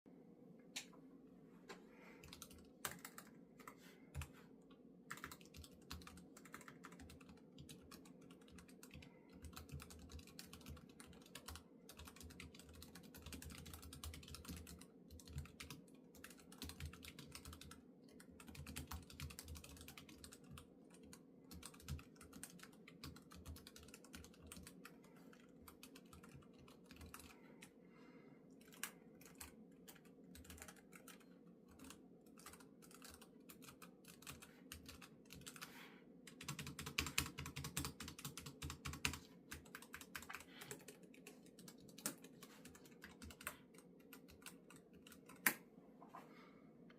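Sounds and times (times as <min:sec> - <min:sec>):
keyboard typing clicks: 0:02.2 - 0:04.3.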